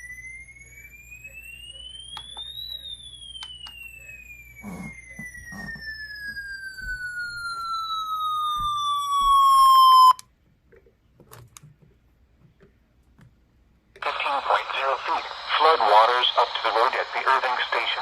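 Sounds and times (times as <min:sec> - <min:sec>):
electronic tone sliding down: 0:04.6 - 0:10.2.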